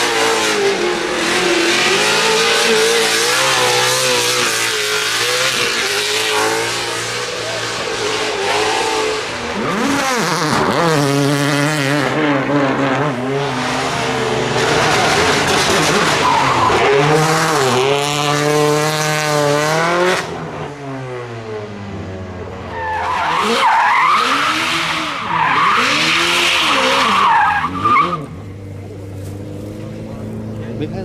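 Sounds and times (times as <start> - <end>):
race car engine revving: 0.0 - 31.0
tyre squeal: 22.7 - 28.4.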